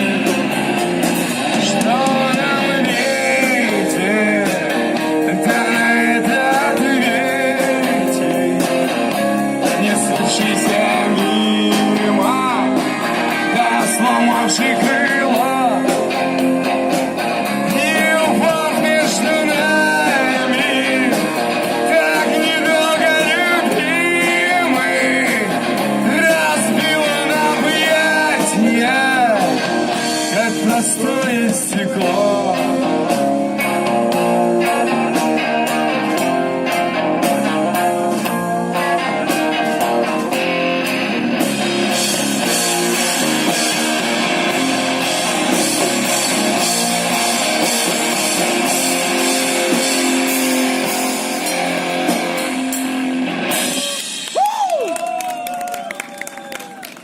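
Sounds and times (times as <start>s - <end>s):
strummed rhythm guitar: 0.0s - 54.3s
drums: 0.0s - 57.0s
lead guitar solo: 32.1s - 57.0s.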